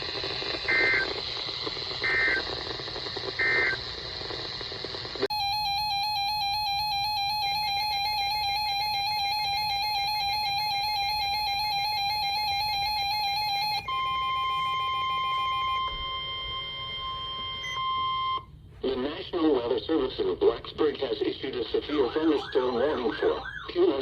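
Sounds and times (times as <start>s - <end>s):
harsh dual-tone alarm: 0.0s - 4.4s, 5.1s - 18.5s, 21.9s - 24.0s
steady single alarm tone: 5.3s - 18.5s.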